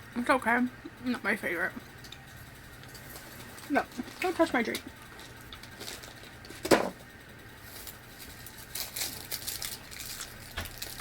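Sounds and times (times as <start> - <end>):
snack packaging crinkling: 3.6 - 6.7, 7.6 - 11.0.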